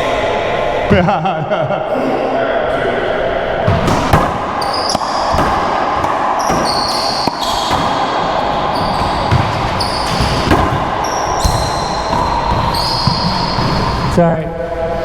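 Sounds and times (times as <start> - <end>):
racquetball hits: 3.6 - 14.2.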